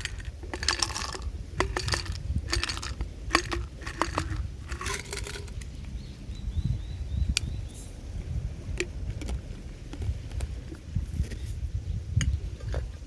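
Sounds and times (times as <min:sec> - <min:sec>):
metal clinking and rattling: 0:00.0 - 0:05.7
steady low rumble: 0:00.0 - 0:13.0.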